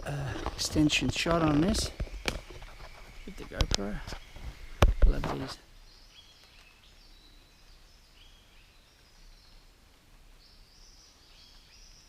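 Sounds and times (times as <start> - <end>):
forest background hiss: 0.0 - 12.0
faint bird calls: 1.4 - 9.7.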